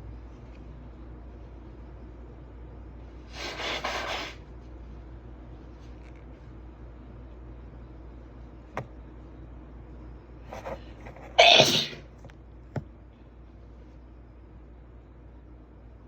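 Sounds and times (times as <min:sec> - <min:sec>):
person sneezing: 0:11.3 - 0:12.0.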